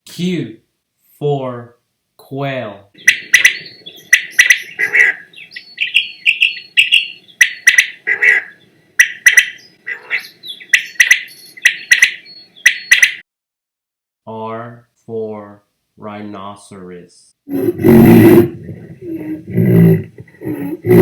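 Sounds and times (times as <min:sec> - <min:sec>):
quail calling: 0:03.0 - 0:13.2, 0:17.5 - 0:21.0.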